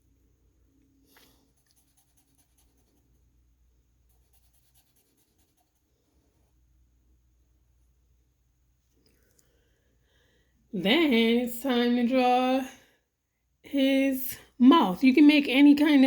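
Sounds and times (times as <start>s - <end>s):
marker scratching on paper: 1.1s - 3.1s, 4.1s - 5.9s.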